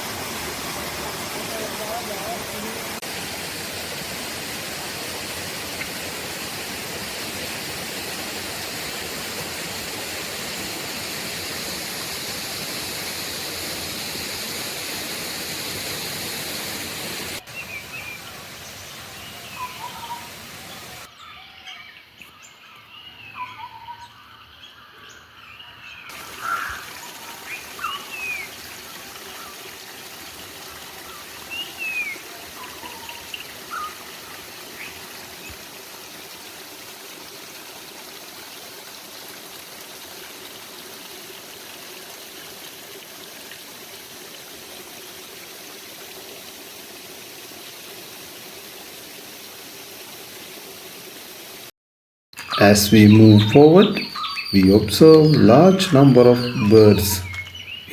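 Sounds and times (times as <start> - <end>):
water rushing: 0.0 - 21.1, 26.1 - 51.7, 52.4 - 57.9
birds chirping and whistling: 52.4 - 57.9.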